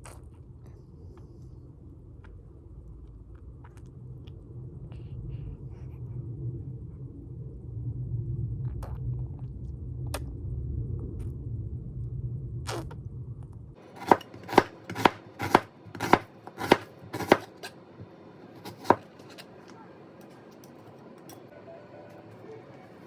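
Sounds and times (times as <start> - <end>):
low steady hum: 0.0 - 23.0
knife chopping on cutting board: 13.9 - 17.7, 18.6 - 19.4.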